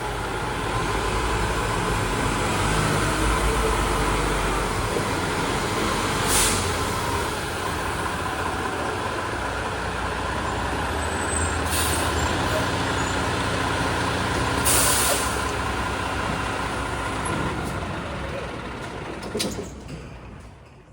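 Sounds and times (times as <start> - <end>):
diesel engine running: 0.0 - 20.8
air brake hisses: 6.2 - 6.8, 11.5 - 12.4, 14.6 - 15.6.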